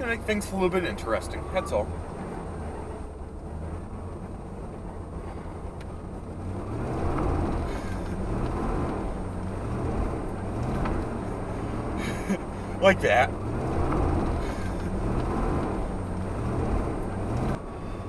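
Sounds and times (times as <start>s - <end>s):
truck engine running: 0.0s - 18.0s
tyre and road noise: 0.0s - 18.0s.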